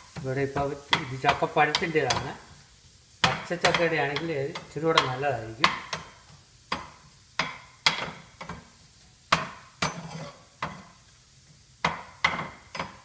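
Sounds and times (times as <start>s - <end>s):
frying in hot oil: 0.0s - 13.0s
utensil clinking against a pan: 0.9s - 2.4s, 3.2s - 8.7s, 11.8s - 13.0s.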